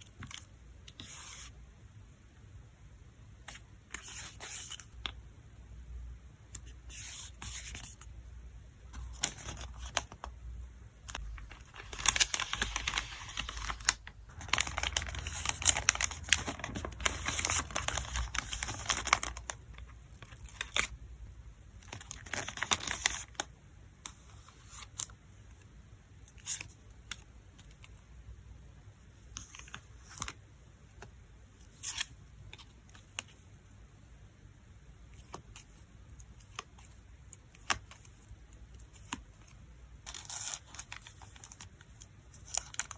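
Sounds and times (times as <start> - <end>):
packing materials crinkling and tearing: 11.1 - 20.9, 21.8 - 23.5, 40.1 - 42.9.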